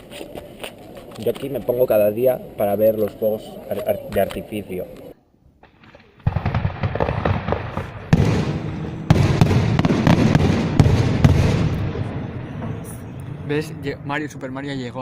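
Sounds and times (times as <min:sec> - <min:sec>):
fireworks bangs and crackles: 0:05.7 - 0:13.2.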